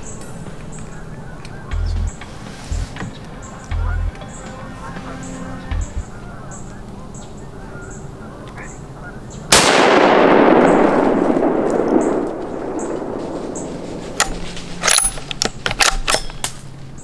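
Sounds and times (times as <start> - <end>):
sharp clicks and knocks: 1.7 - 4.2
rifle shot: 9.5 - 16.2.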